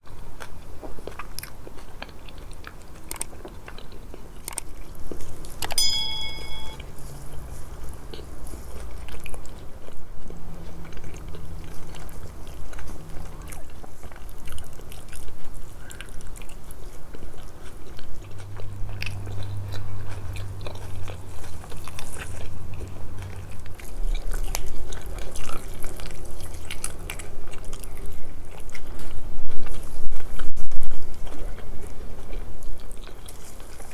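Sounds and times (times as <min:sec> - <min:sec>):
close chewing and biting: 0:00.0 - 0:33.9
short ringing clink: 0:05.7 - 0:06.8.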